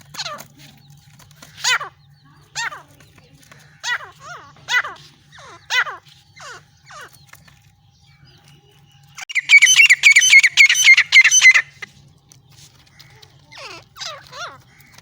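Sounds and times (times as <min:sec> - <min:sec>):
bird calling shrill repeated notes: 0:09.2 - 0:11.9.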